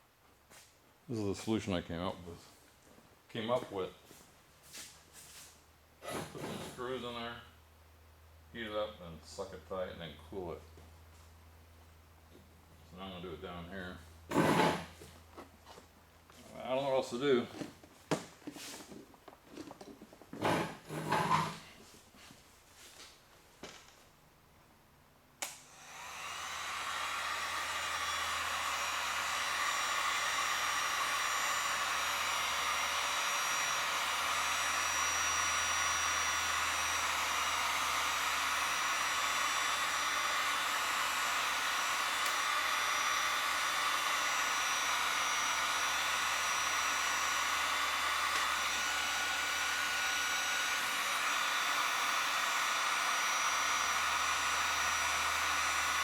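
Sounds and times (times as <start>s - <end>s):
heat gun blowing: 14.3s - 15.1s, 20.4s - 21.8s, 25.4s - 56.0s.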